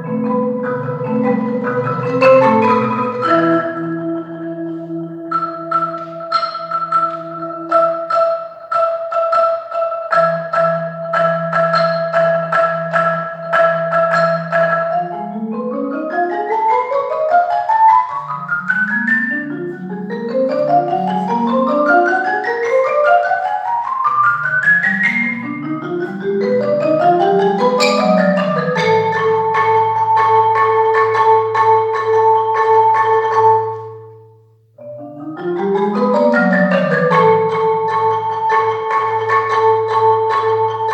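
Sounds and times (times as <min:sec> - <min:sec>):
marimba playing: 0:00.0 - 0:40.9.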